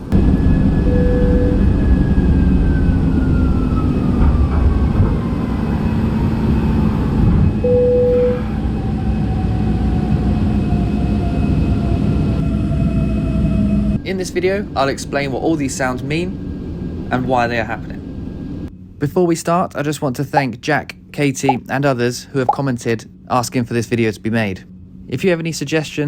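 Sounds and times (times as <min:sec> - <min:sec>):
airliner cabin rumble and whine: 0:00.0 - 0:26.0
short steady tones: 0:00.8 - 0:01.7.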